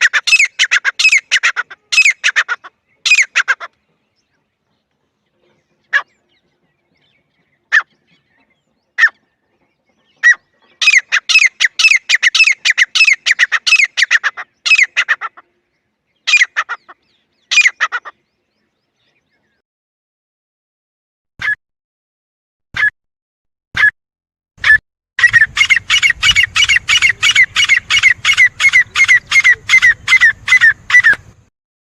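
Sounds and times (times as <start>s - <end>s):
francolin calling: 0.0s - 3.7s, 10.1s - 15.6s, 25.2s - 31.2s.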